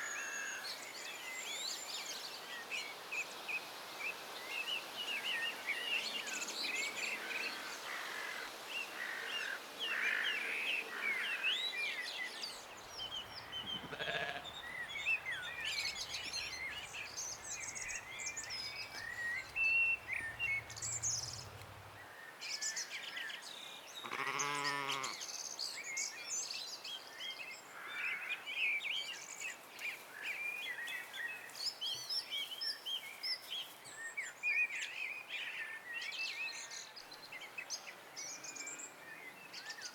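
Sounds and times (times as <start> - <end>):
songbirds chirping and trilling: 0.0 - 39.9
sheep bleating: 13.7 - 14.7, 24.0 - 25.2.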